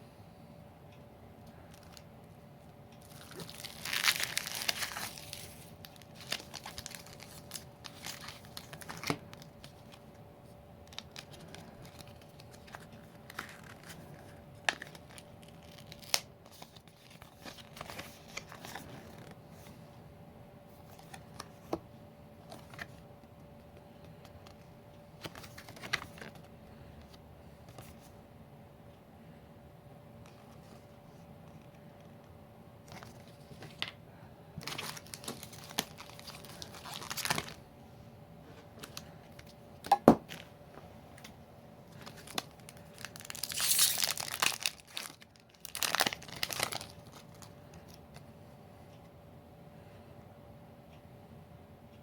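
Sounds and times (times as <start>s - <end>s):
faint steady hum: 0.0s - 52.0s
packaging tearing: 3.0s - 9.5s, 10.9s - 19.3s, 34.6s - 37.6s, 42.0s - 47.5s
wrapper crinkling: 3.0s - 10.1s, 10.8s - 19.3s, 34.6s - 37.6s, 41.9s - 48.0s.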